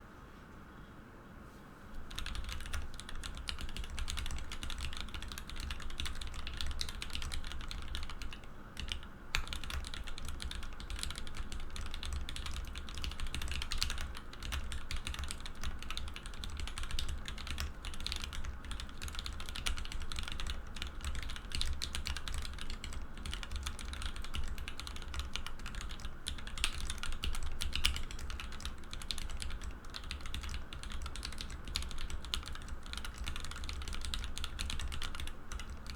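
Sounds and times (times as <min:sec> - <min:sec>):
fast typing on mechanical keyboard: 0:02.0 - 0:35.9.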